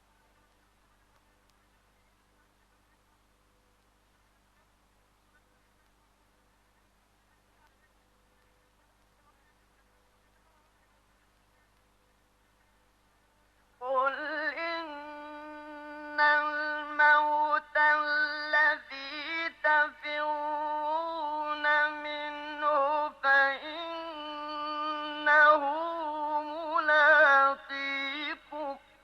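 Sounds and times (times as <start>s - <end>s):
man chanting: 13.8s - 29.0s.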